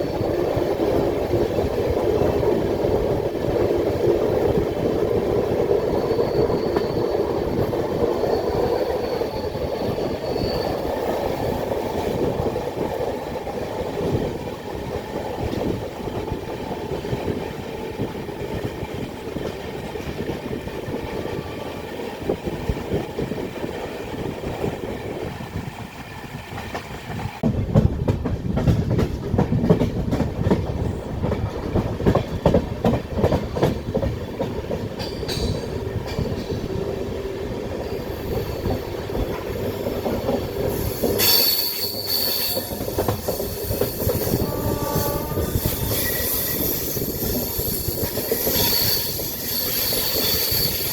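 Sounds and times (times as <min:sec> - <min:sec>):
clickety-clack over rail joints: 0:00.0 - 0:50.9
train wheels rumbling on rails: 0:00.0 - 0:50.9
high wheel squeal: 0:05.8 - 0:11.3, 0:40.6 - 0:50.9.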